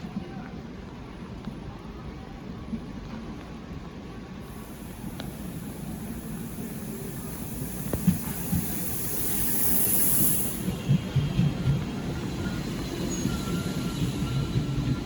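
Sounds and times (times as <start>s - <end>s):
train rumbling: 4.4s - 15.0s
short hiss: 4.5s - 10.8s
train wheels clunking: 4.6s - 15.0s.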